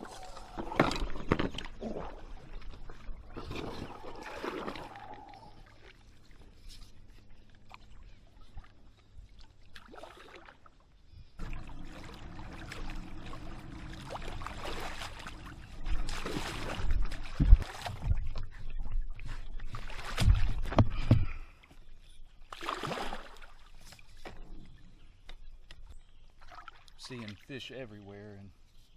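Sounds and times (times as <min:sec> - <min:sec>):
paddle strokes splashing: 0:00.0 - 0:10.8, 0:11.4 - 0:20.9
water rushing: 0:11.4 - 0:17.6.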